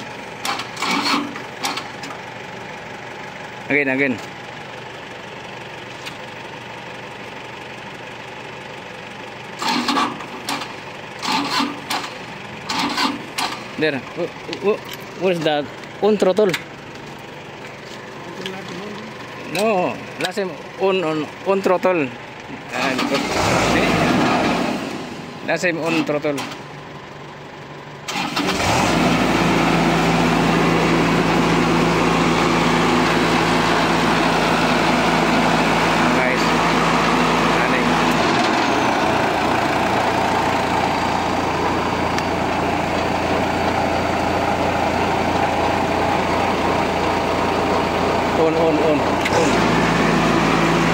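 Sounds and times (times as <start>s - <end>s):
machine engine idling: 24.8s - 50.9s
voice speaking: 36.1s - 36.8s.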